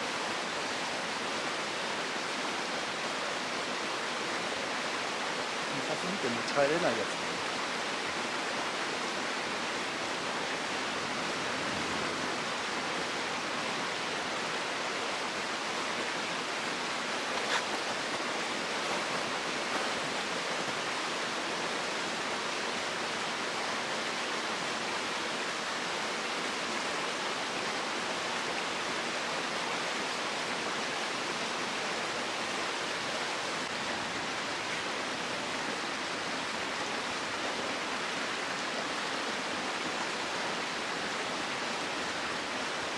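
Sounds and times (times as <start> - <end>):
stream rushing over rocks: 0.0 - 42.9.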